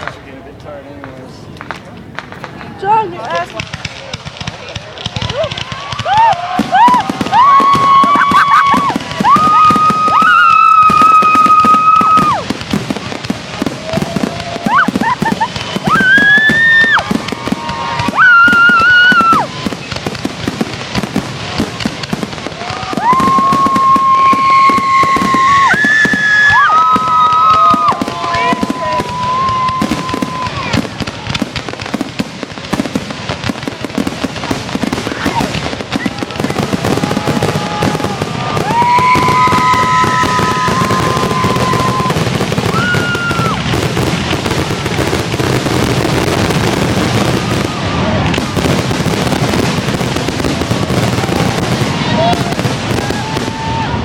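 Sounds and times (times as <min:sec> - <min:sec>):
fireworks popping and crackling: 0:00.0 - 0:54.0
fireworks high whistles: 0:05.3 - 0:13.0, 0:13.6 - 0:31.2, 0:33.9 - 0:54.0.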